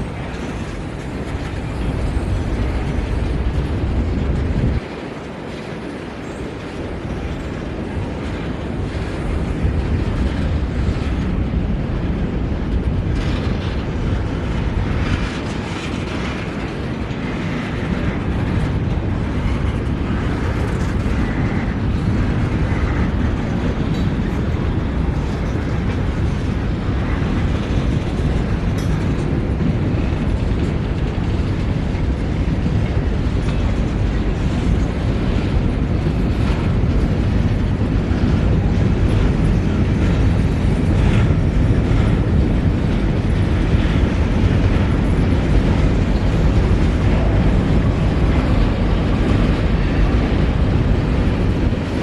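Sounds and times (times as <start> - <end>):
train wheels rumbling on rails: 0.0 - 52.0.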